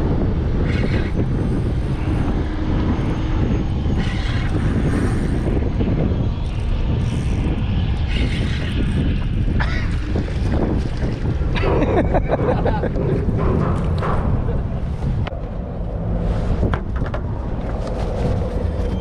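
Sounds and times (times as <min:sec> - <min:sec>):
boat motor rumbling: 0:00.0 - 0:19.0.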